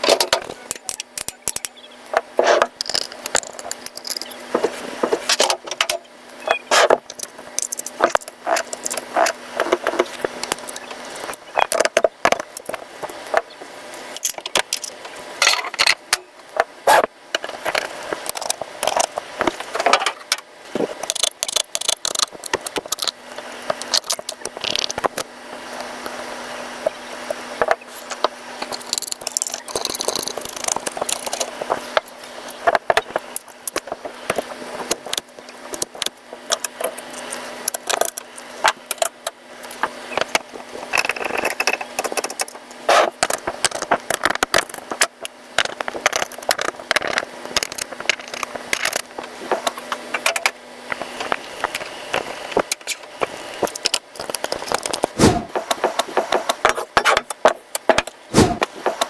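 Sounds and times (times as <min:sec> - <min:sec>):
plastic and metal parts clicking: 0:00.0 - 0:06.0, 0:19.8 - 0:25.2, 0:27.6 - 0:50.5
faint steady hum: 0:00.0 - 0:59.0
low thumps: 0:55.2 - 0:55.6, 0:58.3 - 0:58.6.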